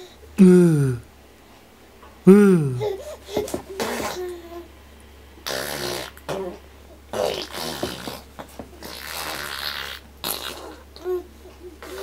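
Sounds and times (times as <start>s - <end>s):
child blowing raspberries: 5.4s - 6.3s, 7.2s - 10.8s.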